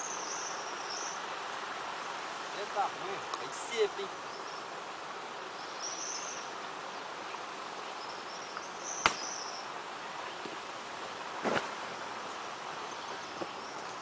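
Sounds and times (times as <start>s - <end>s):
steady outdoor hiss: 0.0s - 14.0s
insects trilling: 2.6s - 9.8s
short rustle: 11.3s - 12.4s.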